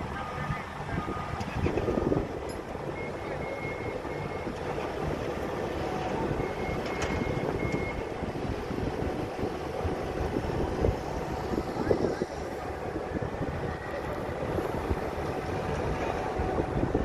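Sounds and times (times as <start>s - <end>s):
heavy machine rumbling: 0.0s - 17.0s
high-pitched warning beeps: 0.1s - 5.1s, 5.7s - 8.8s.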